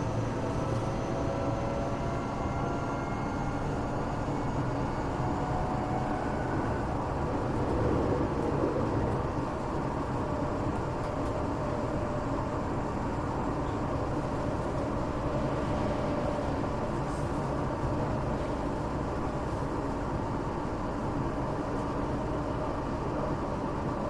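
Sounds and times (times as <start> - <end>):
train wheels rumbling on rail: 0.0 - 24.0.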